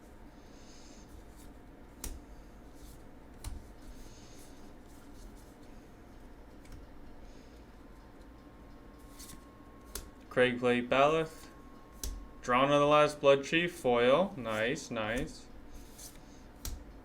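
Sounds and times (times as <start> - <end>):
cards rubbing and sliding: 9.0 - 10.1, 11.2 - 12.2, 14.4 - 16.8.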